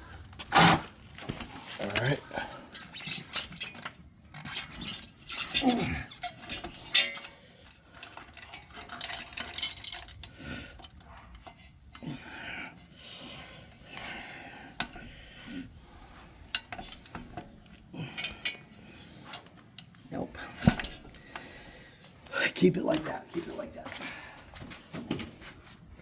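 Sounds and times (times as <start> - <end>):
metallic clinks and scrapes: 1.3 - 12.0, 16.0 - 21.4.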